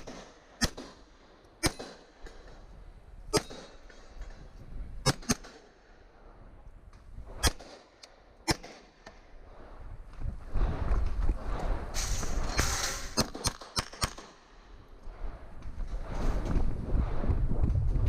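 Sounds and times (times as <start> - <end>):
pistol shots: 0.0 - 2.5, 3.3 - 4.0, 5.0 - 6.0, 7.3 - 9.1, 11.6 - 14.7.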